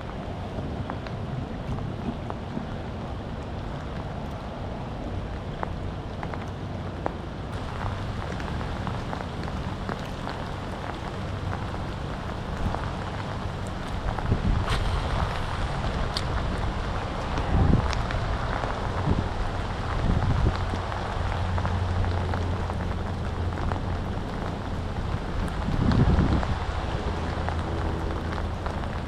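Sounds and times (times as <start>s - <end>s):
wind buffeting microphone: 0.0s - 6.7s, 7.4s - 29.0s
raindrops ticking nearby: 0.0s - 29.0s
rain hiss: 7.5s - 29.0s.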